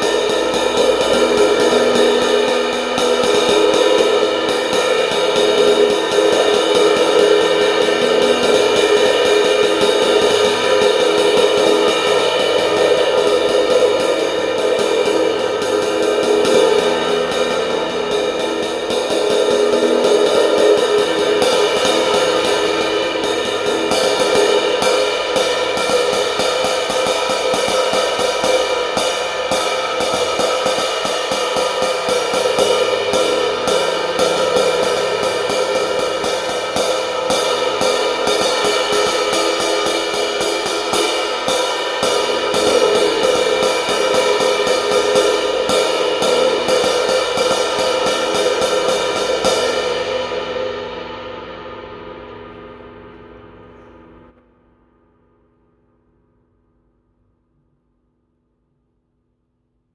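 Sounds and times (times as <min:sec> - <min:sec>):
crash cymbal struck with drumsticks: 0:00.0 - 0:54.2.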